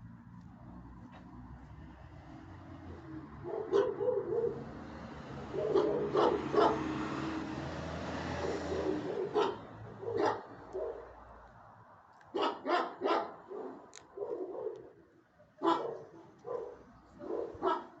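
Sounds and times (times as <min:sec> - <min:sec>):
dog barking: 0:03.4 - 0:04.7, 0:05.5 - 0:07.0, 0:08.4 - 0:11.2, 0:12.3 - 0:18.0.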